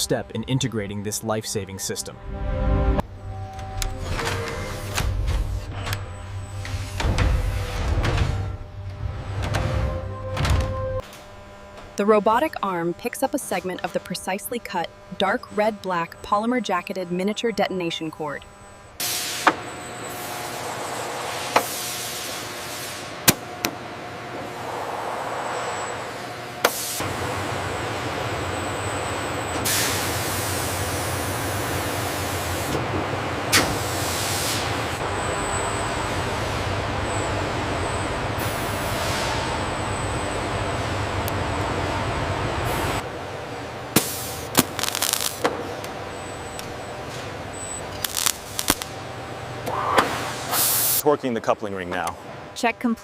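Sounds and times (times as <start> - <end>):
machine hiss: 29.6 - 32.7, 44.0 - 45.5, 50.1 - 51.0.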